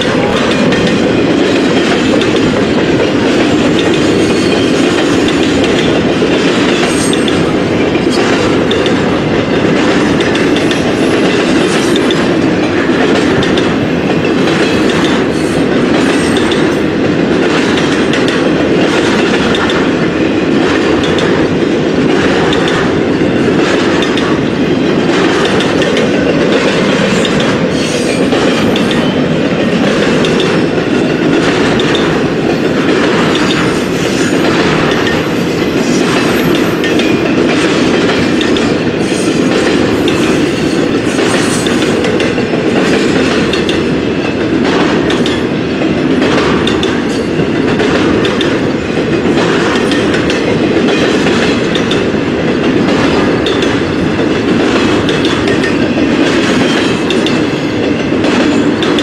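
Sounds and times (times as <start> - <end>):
train wheels clicking over rails: 0.0 - 59.0.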